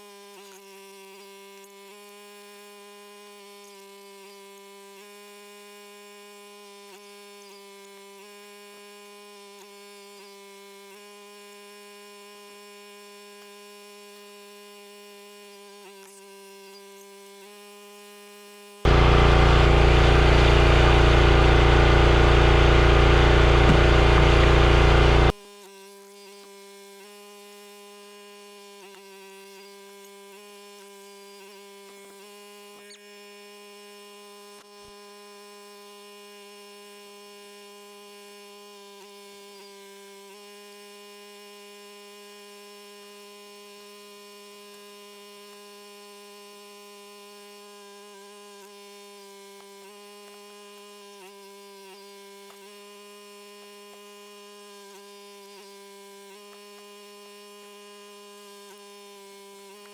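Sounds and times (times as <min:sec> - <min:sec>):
log splitter engine humming: 0:18.9 - 0:25.3.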